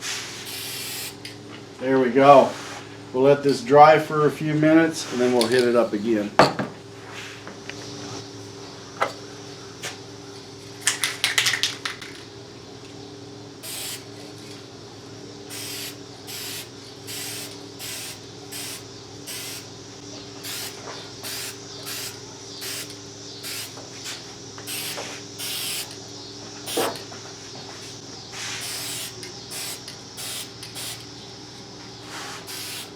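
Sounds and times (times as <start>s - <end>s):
aerosol can spraying: 0.0s - 1.2s, 13.6s - 14.0s, 15.5s - 19.7s, 20.4s - 26.0s, 26.7s - 27.0s, 27.8s - 31.1s, 32.0s - 32.9s
aerosol can rattle: 10.8s - 12.2s.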